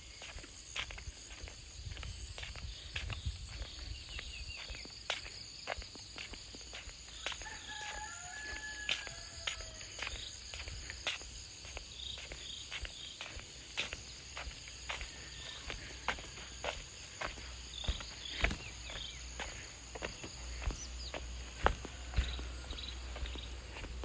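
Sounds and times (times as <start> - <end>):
distant rooster crowing: 7.1 - 10.3, 21.5 - 23.9.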